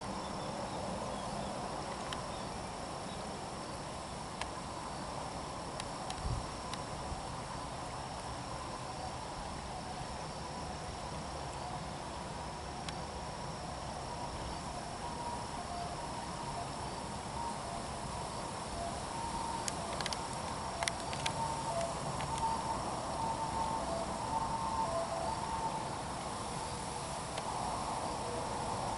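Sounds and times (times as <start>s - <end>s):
crickets shrilling: 0.0s - 28.9s
outdoor hiss: 0.0s - 28.9s
faint clicks: 1.9s - 2.2s, 5.8s - 6.9s, 19.6s - 22.5s.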